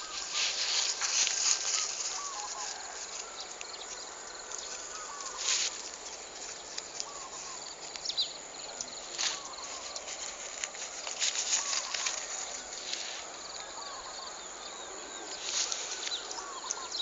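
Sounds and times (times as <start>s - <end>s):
small birds chirping: 0.0s - 17.0s
steady hiss: 0.0s - 17.0s
brief rustles: 9.1s - 13.2s.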